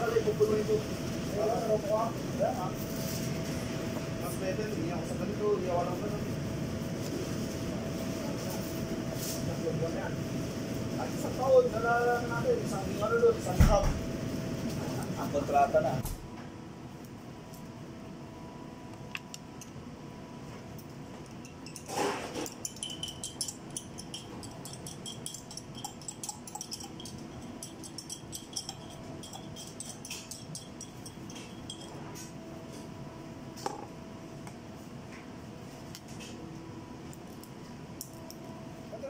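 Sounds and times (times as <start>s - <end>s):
steady background hum: 0.0s - 39.0s
utensils and dishes clinking: 21.2s - 32.3s.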